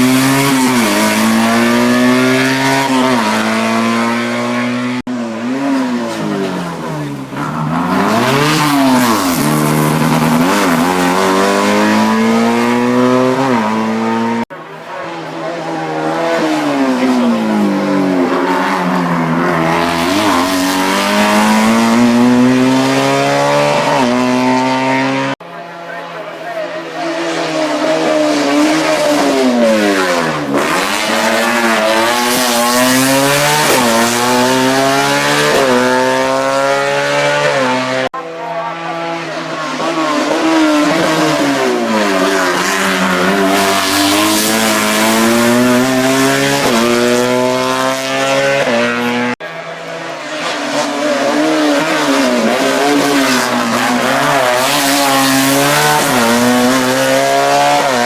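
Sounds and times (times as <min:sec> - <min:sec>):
race car engines accelerating: 0:00.0 - 0:58.0.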